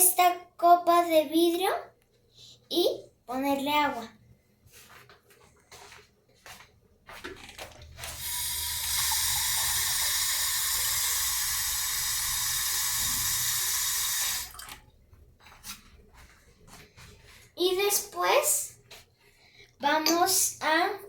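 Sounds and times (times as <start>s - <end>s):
water pouring into a glass: 7.4s - 14.8s.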